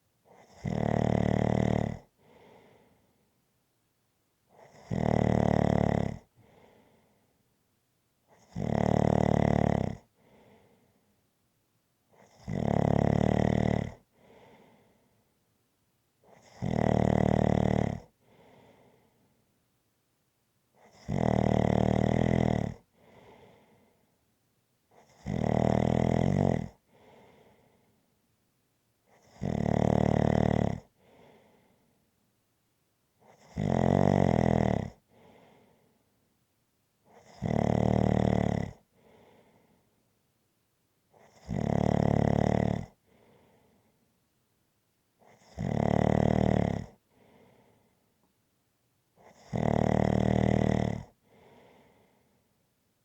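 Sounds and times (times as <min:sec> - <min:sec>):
person snoring: 0:00.4 - 0:02.1, 0:04.6 - 0:06.3, 0:08.4 - 0:10.1, 0:12.2 - 0:14.0, 0:16.3 - 0:18.1, 0:20.8 - 0:23.6, 0:25.0 - 0:27.1, 0:29.2 - 0:30.9, 0:33.3 - 0:35.0, 0:37.2 - 0:38.8, 0:41.2 - 0:43.0, 0:45.3 - 0:47.0, 0:49.2 - 0:52.0
soft breath out: 0:02.2 - 0:03.3, 0:06.4 - 0:07.4, 0:10.2 - 0:11.2, 0:14.1 - 0:15.3, 0:18.2 - 0:19.4, 0:22.9 - 0:24.2, 0:26.9 - 0:28.1, 0:31.0 - 0:32.0, 0:35.1 - 0:36.1, 0:38.9 - 0:40.0, 0:43.0 - 0:44.1, 0:47.1 - 0:48.1, 0:51.2 - 0:52.6.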